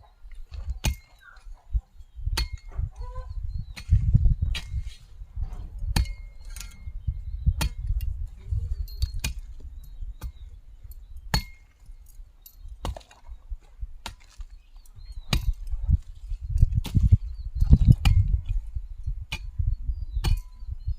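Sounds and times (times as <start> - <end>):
low rumble: 2.4 - 10.6.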